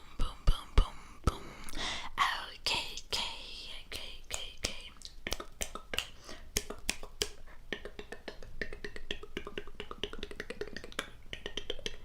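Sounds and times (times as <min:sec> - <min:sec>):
wet tongue and lip clicks: 0:04.2 - 0:12.0.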